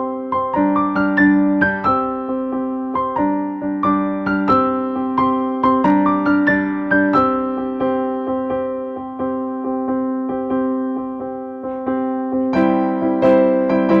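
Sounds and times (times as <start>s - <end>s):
gentle piano chords: 0.0s - 14.0s.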